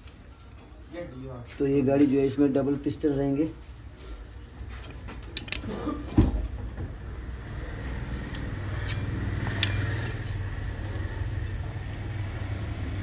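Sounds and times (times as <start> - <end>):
vehicle engine humming: 4.7 - 13.0.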